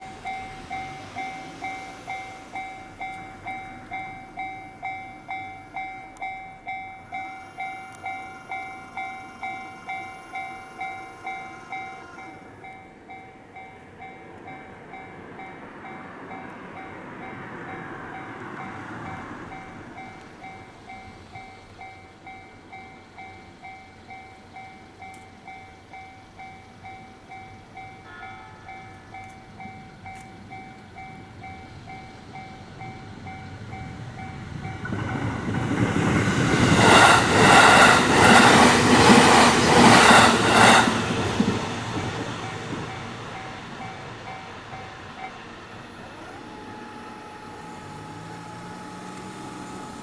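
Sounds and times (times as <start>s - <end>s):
level crossing bell dinging: 0.0s - 14.6s
train wheels clattering: 27.8s - 48.8s.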